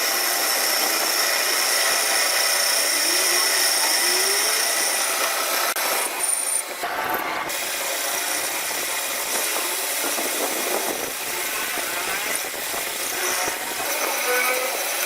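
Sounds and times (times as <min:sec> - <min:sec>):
power tool running: 0:00.0 - 0:15.0.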